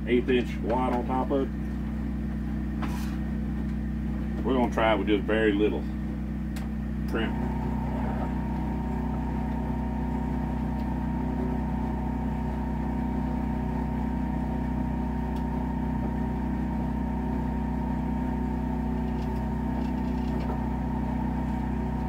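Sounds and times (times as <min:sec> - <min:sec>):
electric motor humming: 0:06.0 - 0:22.0.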